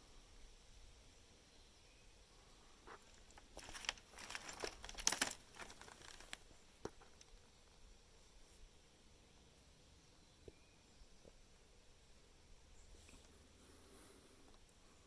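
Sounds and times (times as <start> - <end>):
crackling crinkling rustles: 2.8 - 7.4.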